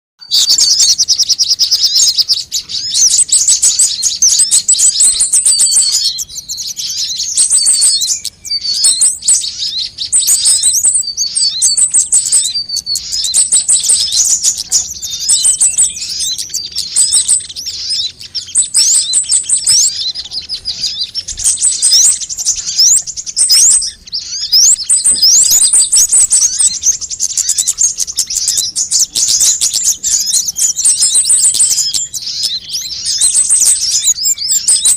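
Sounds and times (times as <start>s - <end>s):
birds chirping and trilling: 0.2s - 34.9s.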